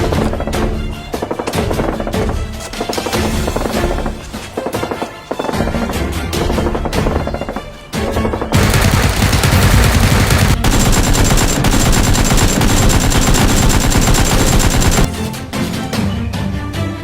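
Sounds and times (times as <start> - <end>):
background music: 0.0 - 17.0
rapid automatic gunfire: 5.4 - 15.1.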